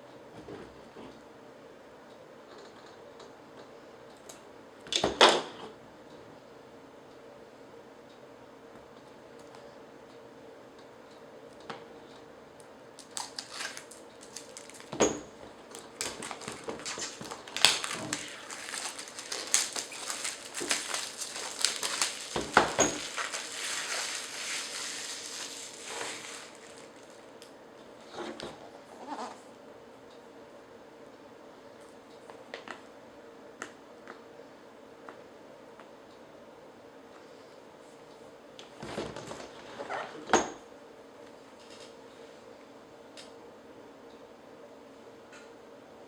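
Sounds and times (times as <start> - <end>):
packaging clicks and rustles: 13.0 - 27.3.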